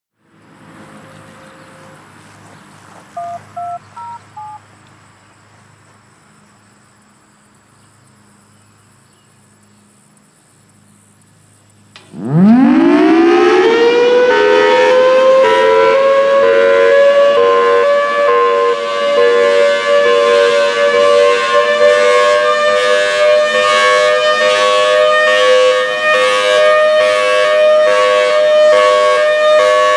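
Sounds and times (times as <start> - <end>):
outdoor warning siren: 0.6 - 2.2, 12.0 - 29.9
touch-tone beeps: 3.2 - 4.6
click: 11.9 - 12.2.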